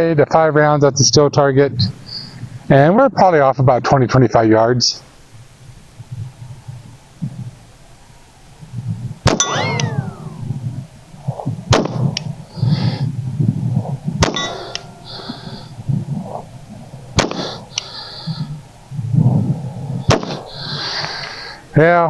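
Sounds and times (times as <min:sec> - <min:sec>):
pistol shots: 0:09.3 - 0:10.5, 0:11.7 - 0:12.2, 0:14.2 - 0:15.6, 0:17.2 - 0:17.9, 0:20.1 - 0:20.4
steel target plate clanging: 0:09.3 - 0:10.5, 0:14.2 - 0:15.8.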